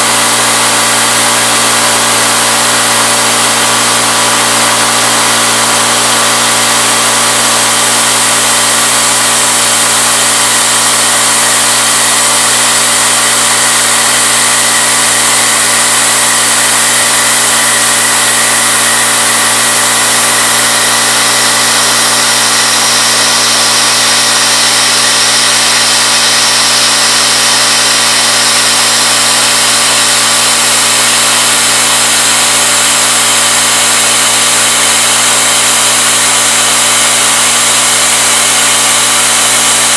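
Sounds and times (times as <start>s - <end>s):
milling machine hum: 0.0s - 39.9s
hissing cutting noise: 7.3s - 34.2s.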